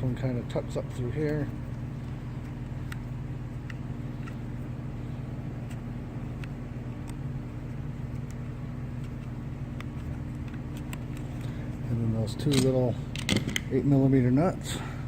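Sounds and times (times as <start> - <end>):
low mechanical motor hum: 0.0 - 15.0
small parts clicking: 12.4 - 13.7.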